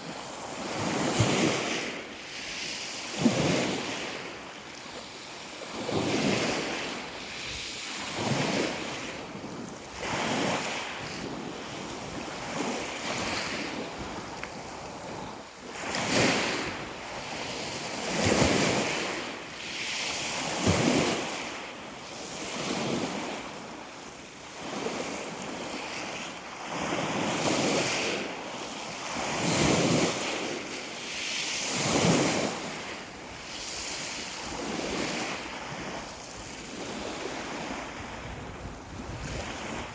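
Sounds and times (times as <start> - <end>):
sea waves washing ashore: 0.0 - 39.9
wind noise on microphone: 5.4 - 21.5, 29.0 - 30.7, 31.6 - 39.9.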